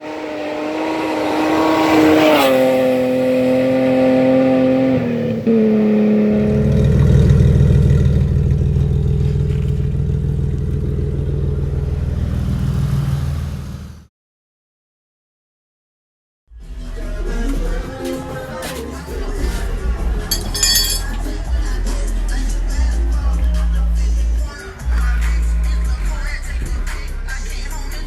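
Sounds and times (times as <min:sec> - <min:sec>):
car engine running hard: 0:00.0 - 0:14.0.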